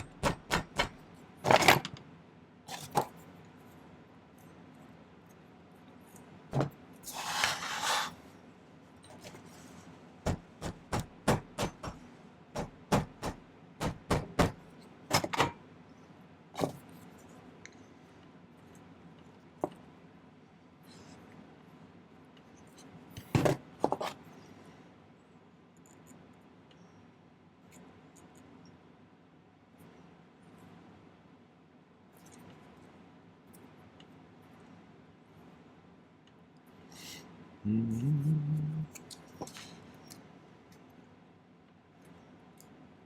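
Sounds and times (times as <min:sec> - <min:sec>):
tool scraping metal wire: 0:07.0 - 0:08.2.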